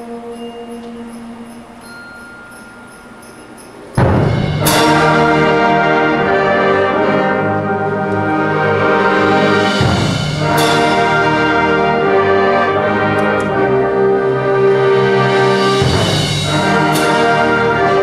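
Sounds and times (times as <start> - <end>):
held music notes: 0.0 - 18.0
loud chord of many notes: 4.0 - 18.0.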